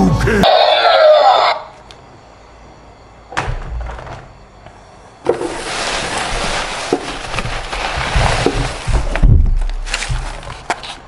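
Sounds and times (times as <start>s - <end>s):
deep thumps: 8.0s - 10.5s.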